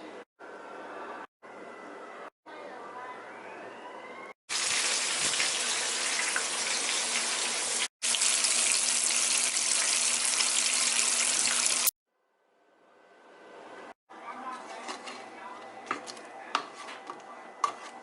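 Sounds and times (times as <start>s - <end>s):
faucet running into sink: 4.6s - 11.9s.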